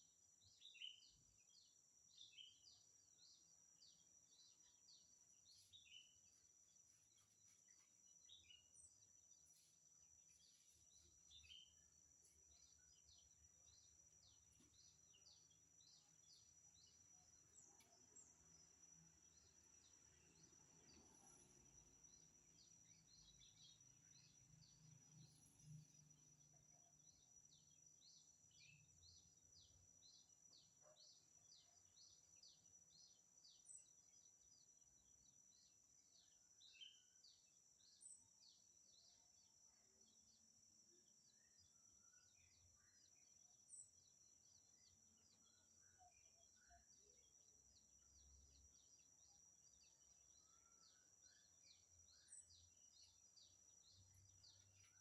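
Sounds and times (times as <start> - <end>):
bird chirps: 0.0 - 9.7, 10.3 - 18.7, 26.8 - 34.0, 35.5 - 39.2, 41.2 - 55.0
insect drone: 0.0 - 55.0.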